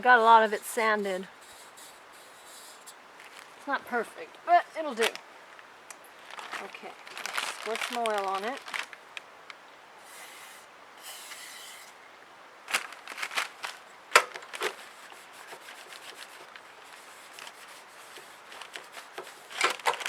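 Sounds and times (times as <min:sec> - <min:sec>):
aerosol can spraying: 0:01.3 - 0:03.0.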